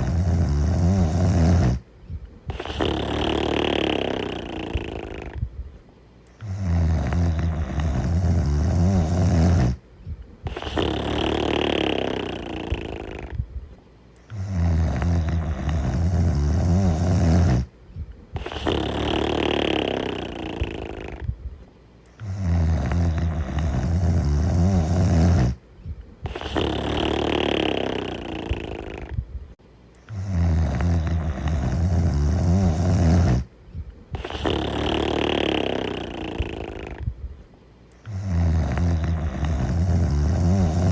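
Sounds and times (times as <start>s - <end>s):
cartoon character snoring: 0.0s - 1.9s, 2.5s - 5.5s, 6.4s - 9.8s, 10.4s - 13.4s, 14.3s - 17.7s, 18.4s - 21.3s, 22.2s - 25.6s, 26.2s - 29.2s, 30.0s - 33.5s, 34.1s - 37.1s, 38.0s - 40.9s.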